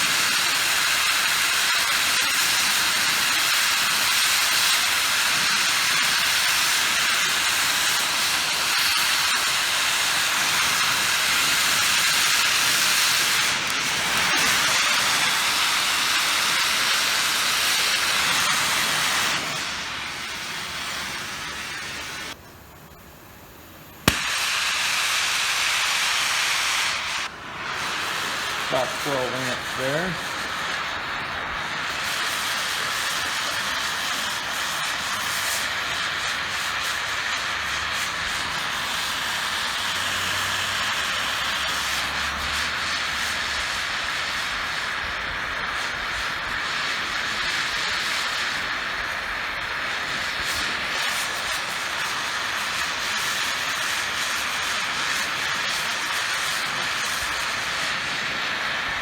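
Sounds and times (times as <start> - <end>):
torch flame hissing: 0.0 - 59.0
sharp pop: 24.0 - 24.9.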